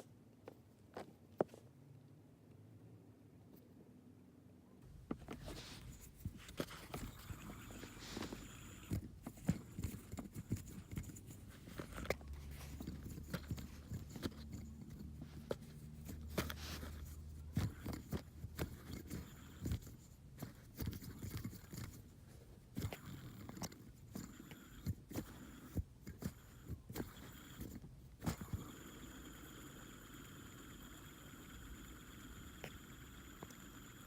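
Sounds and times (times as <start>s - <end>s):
fidget spinner humming while spinning: 5.0s - 34.0s
fidget spinner clicks and taps: 6.2s - 22.0s, 22.7s - 34.0s.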